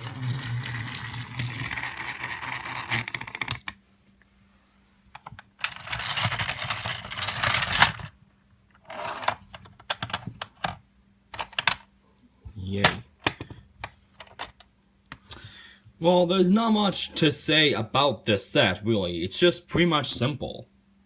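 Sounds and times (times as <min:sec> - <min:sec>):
toy train motor hum: 0:00.0 - 0:03.7, 0:05.6 - 0:08.1
plastic clicks and clatter: 0:02.6 - 0:03.8.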